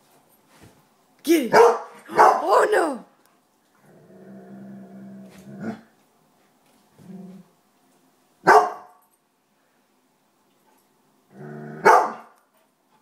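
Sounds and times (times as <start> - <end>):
dog barking: 1.5 - 2.5, 8.4 - 9.0, 11.8 - 12.4
dog growling: 3.8 - 5.9, 7.0 - 7.5, 11.3 - 11.9.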